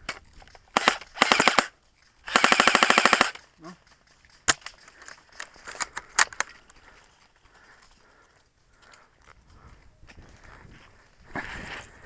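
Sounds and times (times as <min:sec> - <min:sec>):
airsoft gun full-auto burst: 0:00.8 - 0:01.7, 0:02.3 - 0:03.4.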